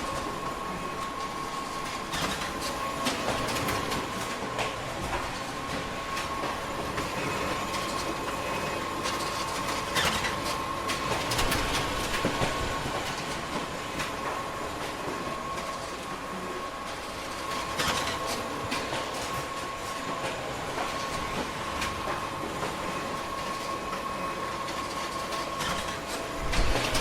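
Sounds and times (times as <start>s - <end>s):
photocopier whirring: 0.0s - 27.0s
paper handling clicks and clatter: 9.0s - 16.0s, 17.2s - 19.5s, 24.6s - 27.0s.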